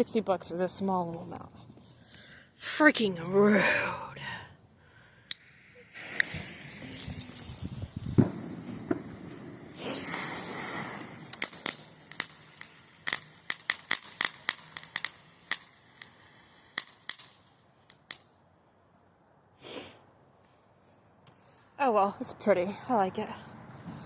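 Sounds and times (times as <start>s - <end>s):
firework pops and crackles: 5.3s - 18.4s
firework hissing spray: 5.4s - 18.2s.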